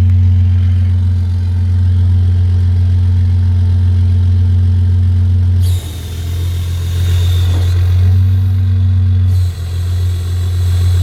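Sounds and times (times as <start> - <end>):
diesel engine idling: 0.0 - 11.0
compressed air hissing with whistle: 5.6 - 11.0.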